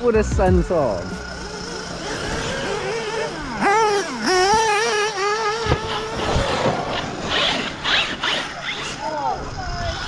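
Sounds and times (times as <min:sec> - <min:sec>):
electric motor whining: 0:00.0 - 0:10.0.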